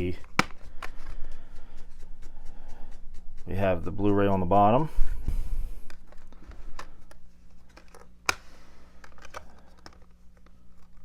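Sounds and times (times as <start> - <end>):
disc case clicks: 0.3 - 1.0, 6.0 - 10.9
case rustling: 5.8 - 11.0.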